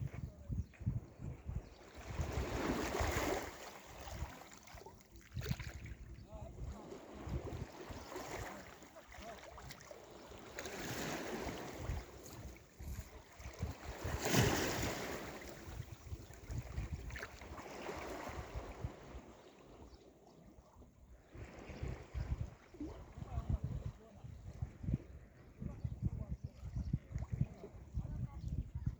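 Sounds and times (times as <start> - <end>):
wind buffeting microphone: 0.0 - 4.4, 5.2 - 8.7, 9.6 - 19.3, 21.3 - 28.9
sea waves washing in: 13.7 - 16.0.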